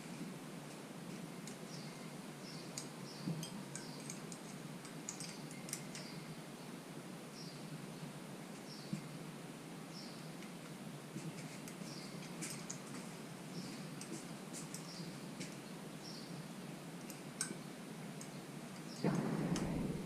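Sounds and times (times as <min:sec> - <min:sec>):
light metallic clicks of tools: 0:02.7 - 0:06.2, 0:11.4 - 0:13.1, 0:13.9 - 0:15.6, 0:17.0 - 0:19.0
low steady hum: 0:15.0 - 0:20.0.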